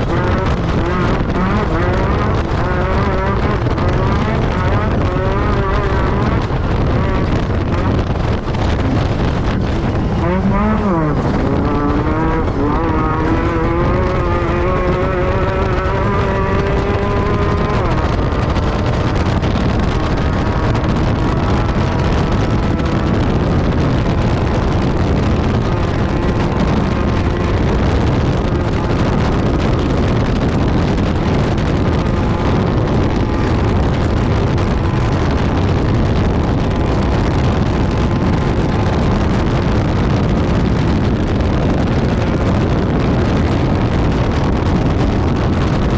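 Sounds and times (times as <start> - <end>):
buggy engine accelerating: 0.0 - 45.9
wind noise: 0.0 - 45.9.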